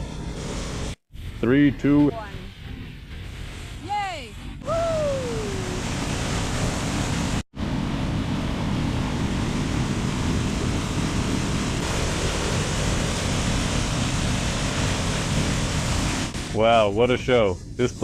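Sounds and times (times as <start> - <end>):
waterfall roaring: 4.6 - 17.3.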